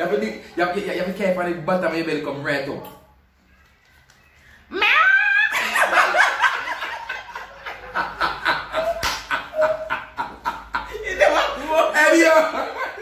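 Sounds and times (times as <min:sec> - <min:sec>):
people laughing: 0:05.4 - 0:13.0.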